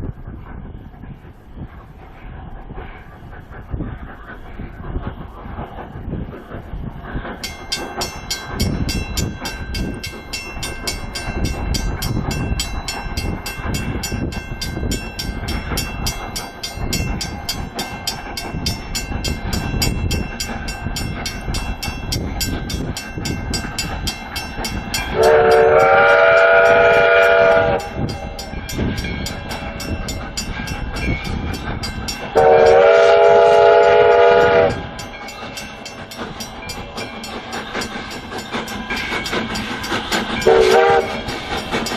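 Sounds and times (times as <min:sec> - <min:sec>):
train rumbling: 0:00.0 - 0:41.9
train whistle blasts: 0:25.1 - 0:28.0, 0:32.4 - 0:34.9, 0:40.4 - 0:41.3.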